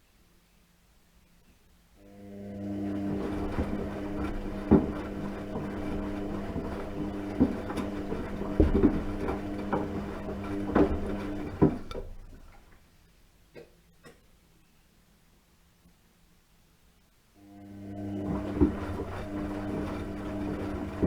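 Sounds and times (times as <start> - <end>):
washing machine motor hum: 2.0 - 12.8, 17.4 - 21.0
washing machine drum clunks: 2.9 - 12.6, 18.1 - 21.0.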